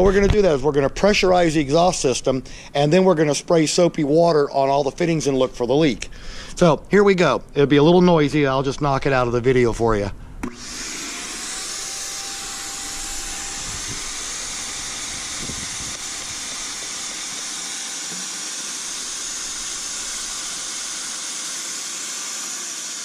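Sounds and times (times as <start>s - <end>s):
shop vac blowing air hiss: 10.4s - 23.0s.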